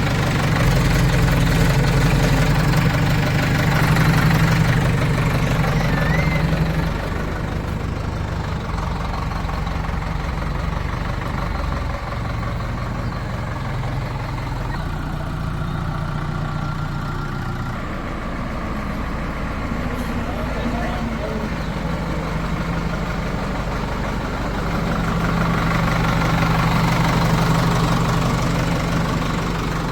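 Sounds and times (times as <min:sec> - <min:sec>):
heavy diesel engine running: 0:00.0 - 0:29.9.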